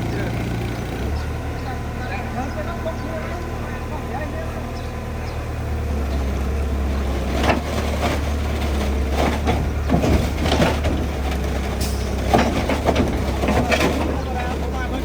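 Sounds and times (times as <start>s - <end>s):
heavy machinery diesel engine: 0.0s - 15.0s
clanks and crunches of metal: 6.8s - 15.0s.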